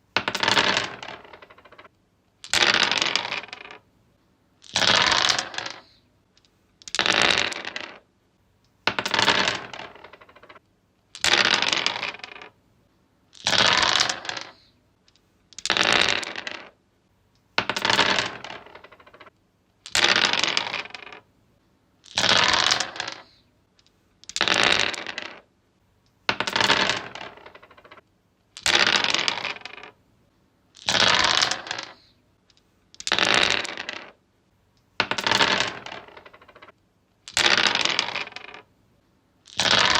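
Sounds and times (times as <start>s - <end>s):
dice clattering on wood: 0.2s - 3.8s, 4.6s - 6.0s, 6.8s - 8.0s, 8.9s - 12.5s, 13.3s - 16.8s, 17.6s - 21.3s, 22.0s - 25.5s, 26.2s - 28.0s, 28.6s - 30.0s, 30.8s - 34.2s, 34.9s - 38.7s, 39.4s - 39.9s.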